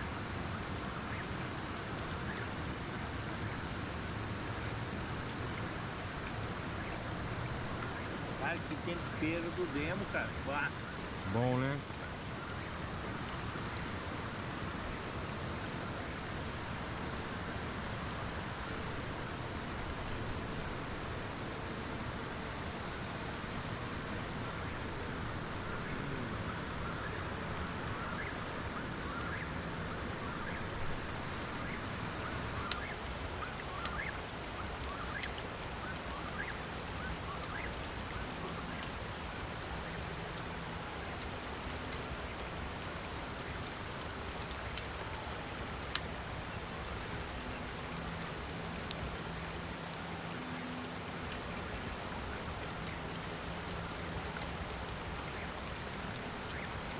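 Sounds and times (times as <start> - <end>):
high insect trill: 3.3 - 14.4.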